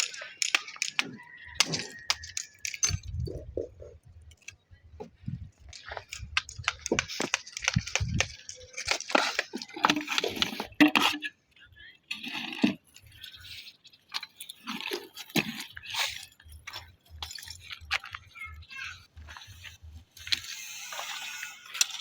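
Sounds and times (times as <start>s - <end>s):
stone scraping and crunching: 5.3s - 11.3s.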